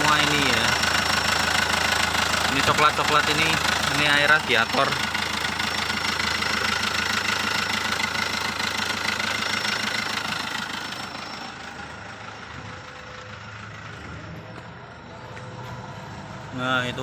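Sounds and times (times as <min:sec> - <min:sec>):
diesel engine idling: 0:00.0 - 0:17.0.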